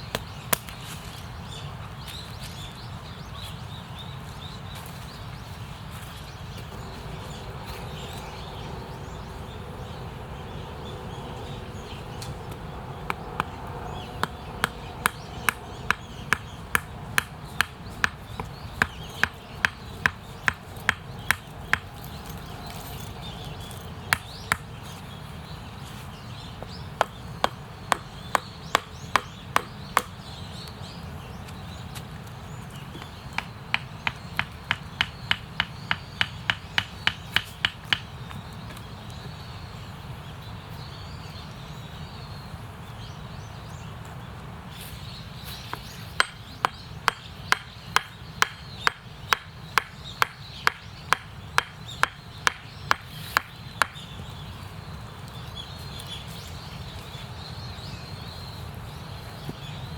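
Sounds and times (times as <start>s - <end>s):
wood being chopped: 0.1s - 0.8s, 14.2s - 22.1s, 24.1s - 24.7s, 26.6s - 30.2s, 33.0s - 38.1s, 45.7s - 54.0s.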